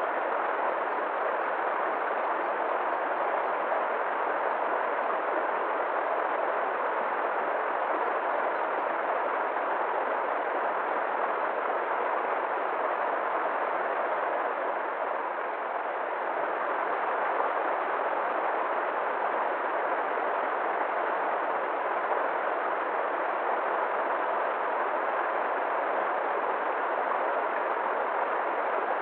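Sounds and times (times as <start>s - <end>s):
river water rushing: 0.0s - 29.0s.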